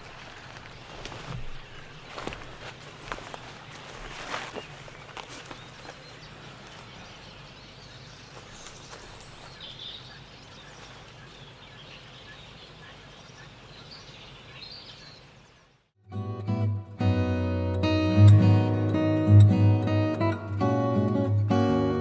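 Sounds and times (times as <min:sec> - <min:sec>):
soft woodland hiss: 0:00.0 - 0:15.8.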